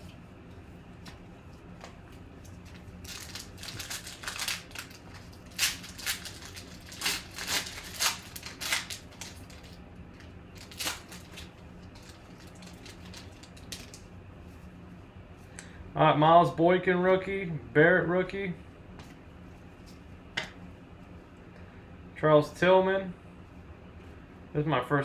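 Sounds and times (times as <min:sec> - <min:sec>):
packaging tearing and crinkling: 0:03.0 - 0:14.1.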